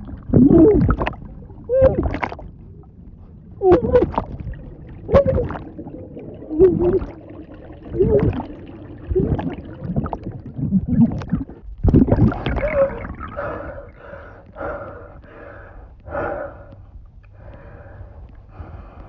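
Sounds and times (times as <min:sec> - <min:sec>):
woman gurgling: 0:01.7 - 0:02.2, 0:03.6 - 0:04.2, 0:05.0 - 0:05.8, 0:06.4 - 0:07.2, 0:07.9 - 0:09.6, 0:12.3 - 0:13.4.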